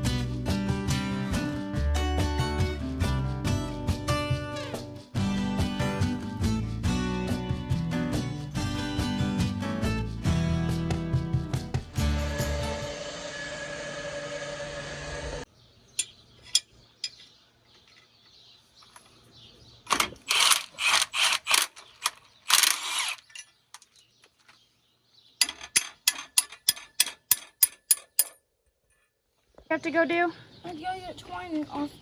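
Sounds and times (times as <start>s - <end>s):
music: 0.0s - 15.4s
sharp ratchet-like clicks: 19.9s - 23.4s
rasping strokes: 20.3s - 23.3s.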